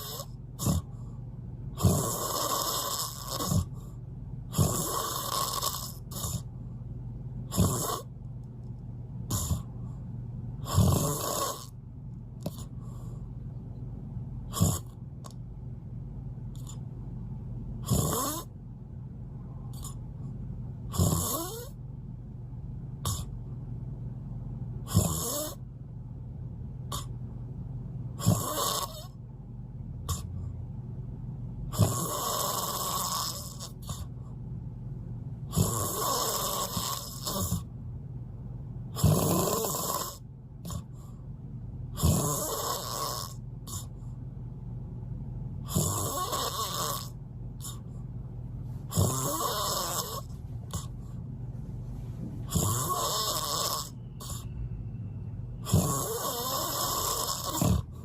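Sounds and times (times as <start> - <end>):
loud snoring: 0.0 - 1.0, 1.7 - 6.5, 7.4 - 8.1, 9.3 - 9.7, 10.6 - 11.8, 14.5 - 15.0, 17.8 - 18.5, 20.9 - 21.8, 23.0 - 23.3, 24.8 - 25.6, 26.9 - 27.1, 28.2 - 29.2, 30.1 - 30.3, 31.7 - 34.1, 35.5 - 37.7, 38.9 - 40.9, 41.9 - 43.9, 45.6 - 47.8, 48.9 - 51.0, 52.4 - 54.5, 55.6 - 58.0
steady low hum: 0.0 - 58.0.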